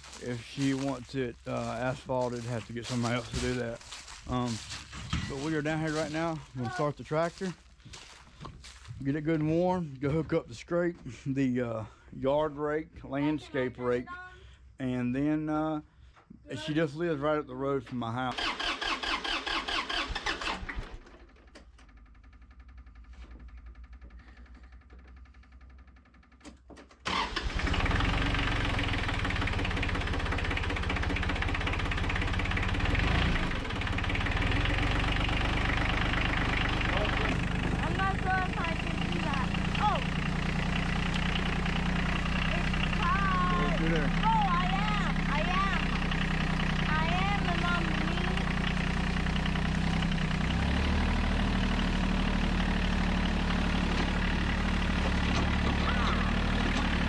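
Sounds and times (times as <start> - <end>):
tractor engine cranking and starting: 0.0 - 11.3, 17.7 - 57.0.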